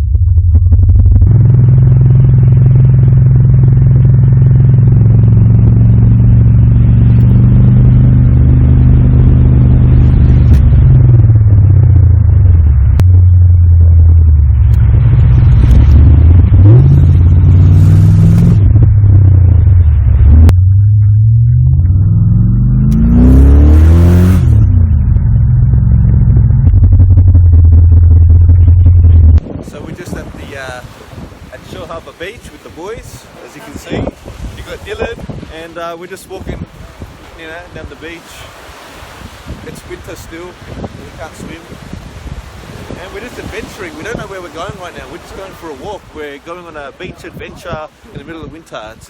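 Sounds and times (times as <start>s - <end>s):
car engine revving: 0.0s - 35.7s.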